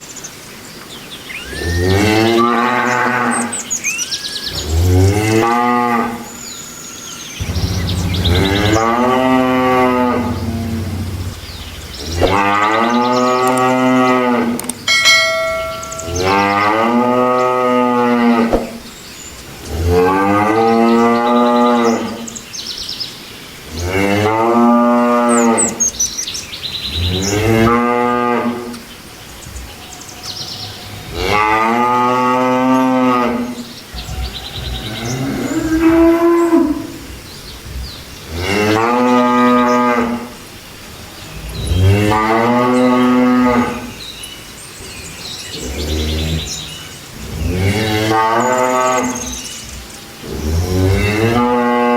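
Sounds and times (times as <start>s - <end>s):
cattle mooing: 1.6s - 3.6s, 7.4s - 14.6s, 15.4s - 18.8s
steady ringing tone: 14.9s - 16.6s.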